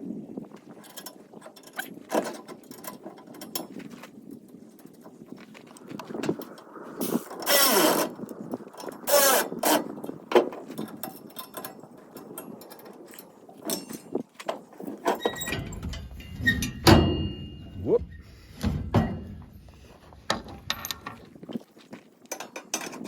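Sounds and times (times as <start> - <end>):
hardware parts clicking and knocking: 10.3 - 21.4
rustling scrape: 14.8 - 21.6.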